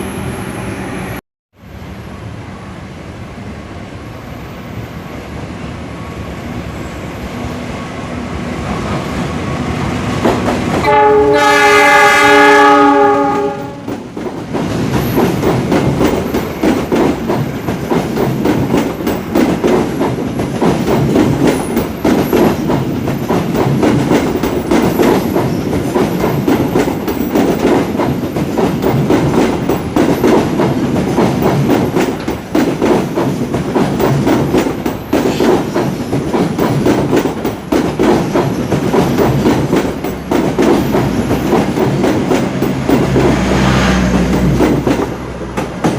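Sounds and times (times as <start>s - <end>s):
train rumbling past: 0.0s - 45.9s
wheels clacking over rail joints: 10.2s - 45.9s
train horn: 10.8s - 13.9s.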